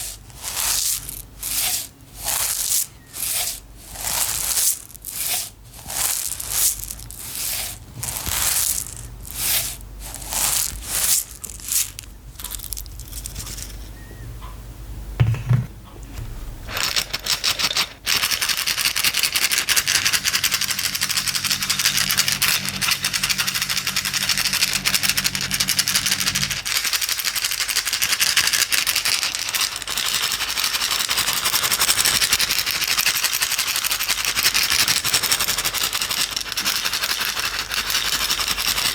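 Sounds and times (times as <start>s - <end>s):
small hard items rattling in container: 0.0s - 13.8s, 16.6s - 38.9s
knock: 15.2s - 15.8s.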